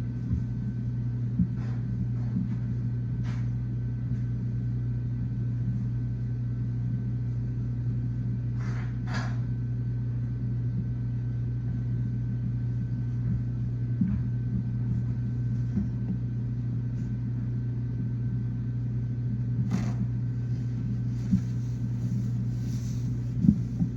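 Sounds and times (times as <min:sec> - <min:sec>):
machine humming: 0:19.3 - 0:23.9.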